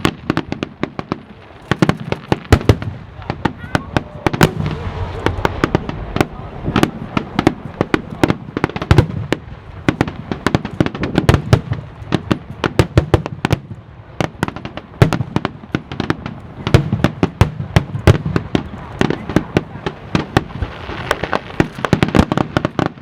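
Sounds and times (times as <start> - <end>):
fireworks bursting: 0.0 - 23.0
low rumble: 4.0 - 8.6.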